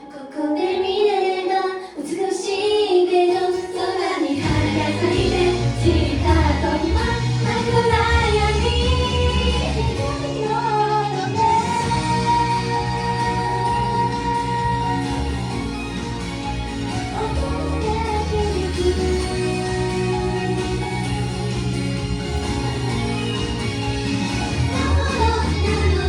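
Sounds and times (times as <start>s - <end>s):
women singing pop song: 0.0s - 15.8s, 16.8s - 22.0s, 22.9s - 26.0s
low bass: 4.4s - 10.6s, 11.3s - 26.0s
band playing: 11.2s - 26.0s.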